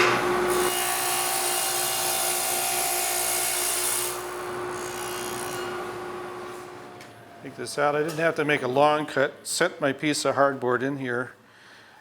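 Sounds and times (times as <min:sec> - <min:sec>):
saw cutting across a board: 0:00.0 - 0:06.7
table saw running: 0:00.0 - 0:07.0.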